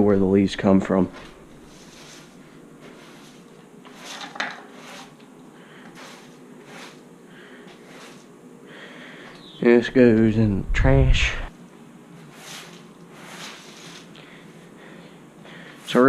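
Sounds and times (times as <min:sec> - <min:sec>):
leaves scraping on concrete: 0:01.6 - 0:05.2, 0:06.0 - 0:07.0, 0:12.2 - 0:14.1.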